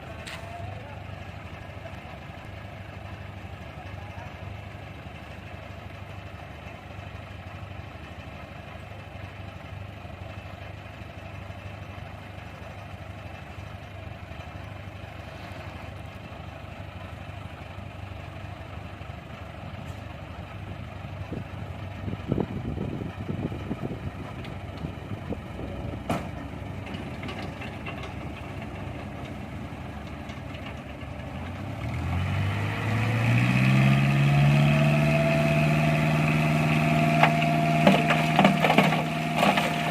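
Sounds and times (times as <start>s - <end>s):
diesel engine idling and revving: 0.0s - 39.9s.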